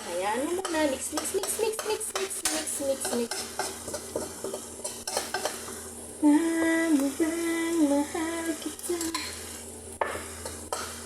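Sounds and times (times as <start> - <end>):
spatula scraping frying pan: 0.0 - 6.0, 8.6 - 11.0
food sizzling in hot oil: 0.0 - 11.0.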